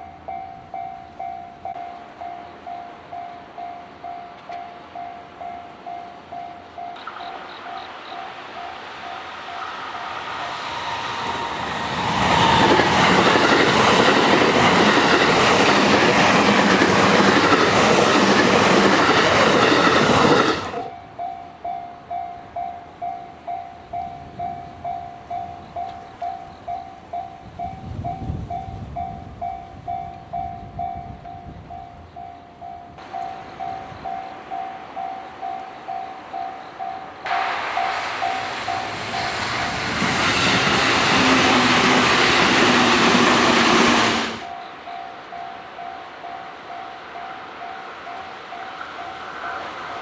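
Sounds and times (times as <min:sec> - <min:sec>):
crossing warning bell ringing: 0:00.0 - 0:50.0
electric train rumbling past: 0:00.0 - 0:50.0.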